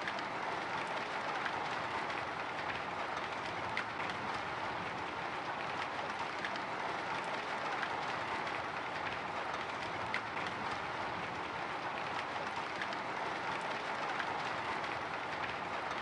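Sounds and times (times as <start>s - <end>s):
drizzle pattering on a window: 0.0s - 16.0s.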